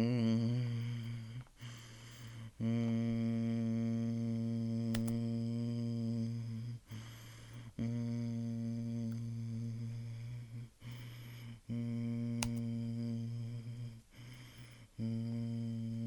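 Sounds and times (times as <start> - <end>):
sharp click: 4.9 - 5.2, 12.4 - 12.7.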